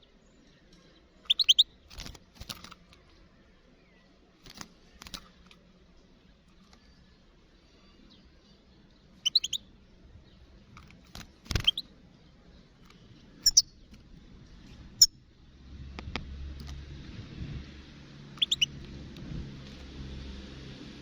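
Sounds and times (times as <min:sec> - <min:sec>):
goldfinch chirping: 0:01.3 - 0:01.7, 0:09.2 - 0:09.6, 0:11.2 - 0:11.8, 0:13.4 - 0:13.8, 0:18.4 - 0:18.8
wind-like rushing with low rumble: 0:14.1 - 0:21.0.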